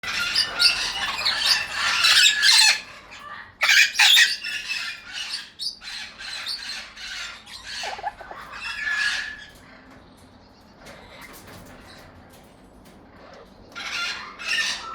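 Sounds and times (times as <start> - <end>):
parrots squawking: 0.0 - 10.0, 13.2 - 14.9.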